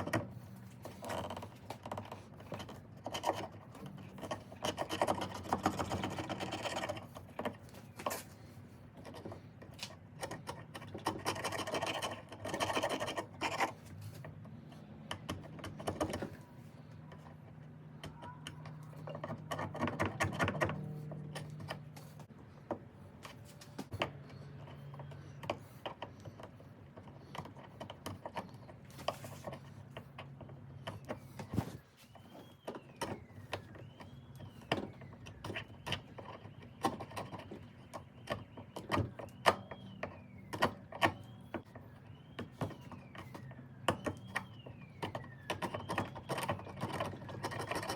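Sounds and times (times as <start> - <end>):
scattered clicks and knocks: 0.0 - 8.2, 9.0 - 31.6, 32.2 - 47.9
scraping rubber grip: 0.0 - 17.5, 23.2 - 41.6.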